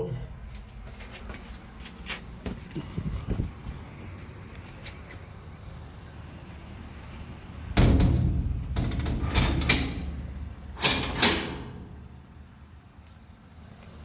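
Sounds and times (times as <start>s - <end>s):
steel door clanking: 7.6s - 12.6s.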